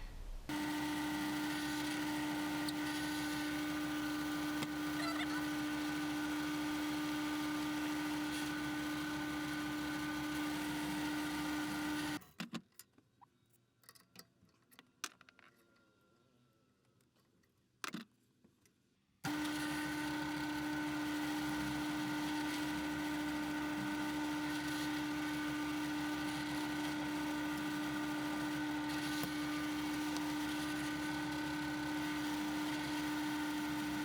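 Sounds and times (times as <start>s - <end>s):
drill press boring wood: 0.5s - 12.2s, 19.3s - 34.0s.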